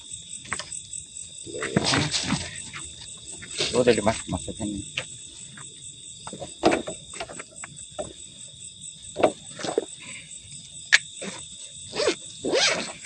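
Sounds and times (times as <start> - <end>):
insects chirring: 0.0 - 13.0
handling knocks and rustles: 6.3 - 8.2.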